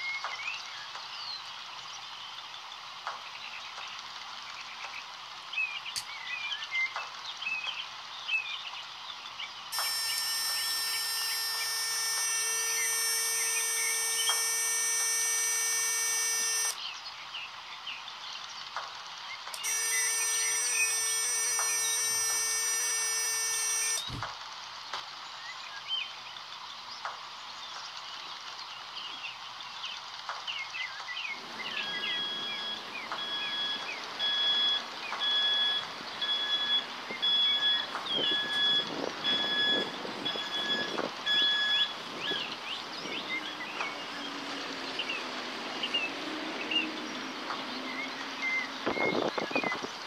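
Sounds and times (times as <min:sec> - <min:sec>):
birds chirping: 0:09.4 - 0:17.1, 0:19.5 - 0:24.3, 0:31.0 - 0:50.0
alarm buzzer beeping: 0:09.7 - 0:16.8, 0:19.6 - 0:24.3, 0:31.4 - 0:42.6.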